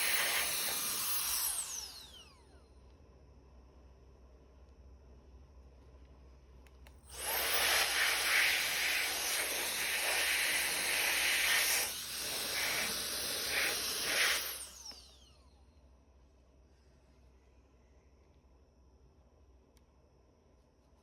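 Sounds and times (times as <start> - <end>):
motor whine spinning down: 0.0 - 2.7, 7.1 - 15.7
electric fan rushing hiss: 7.1 - 15.0.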